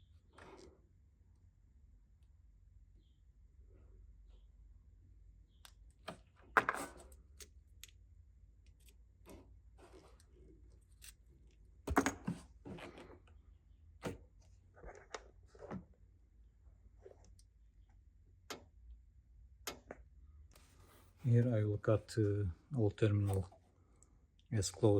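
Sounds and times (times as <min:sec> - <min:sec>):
small clicks and rustles of wiring: 0:05.5 - 0:11.6.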